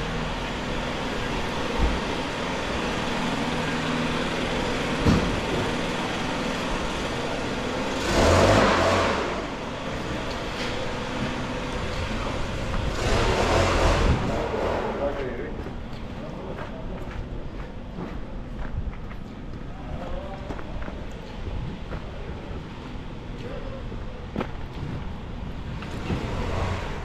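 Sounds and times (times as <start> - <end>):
vehicle engine running: 0.0 - 27.0
rush of noise: 0.8 - 15.3.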